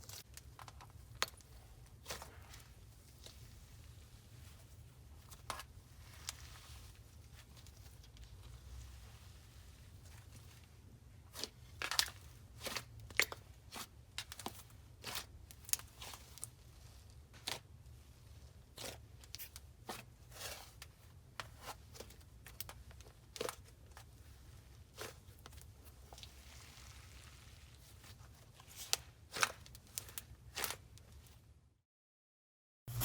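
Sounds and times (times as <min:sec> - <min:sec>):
slime being squished by hand: 0:24.9 - 0:30.8.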